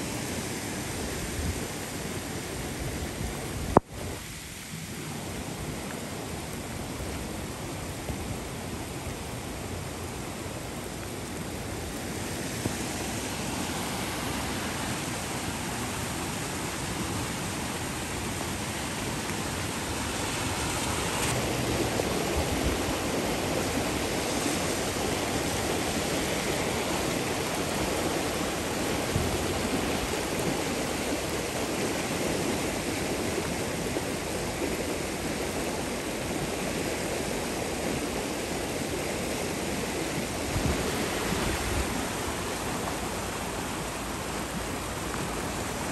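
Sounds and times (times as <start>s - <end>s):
floodwater rushing: 0.0s - 45.9s.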